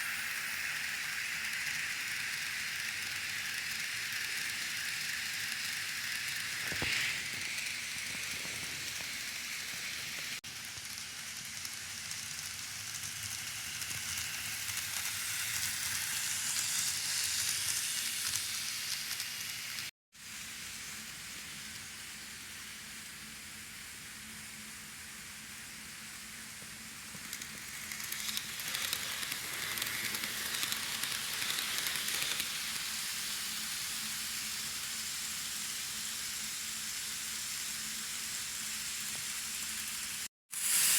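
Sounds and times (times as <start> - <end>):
model train wheels rattling: 0.4 - 19.8, 27.2 - 33.6.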